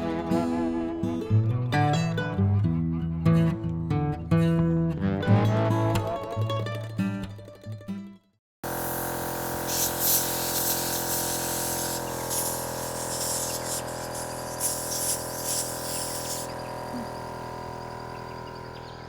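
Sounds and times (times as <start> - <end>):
steady mechanical hum: 8.6 - 19.0.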